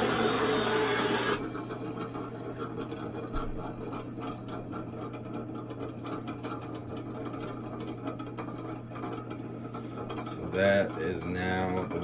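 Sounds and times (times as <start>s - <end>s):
pump humming: 0.0s - 1.6s
water flowing through pipes: 0.0s - 12.0s.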